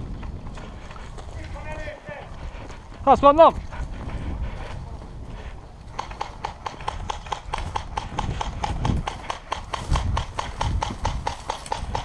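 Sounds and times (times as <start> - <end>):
wind rumble on microphone: 0.0 - 12.0
airsoft guns firing: 5.9 - 12.0.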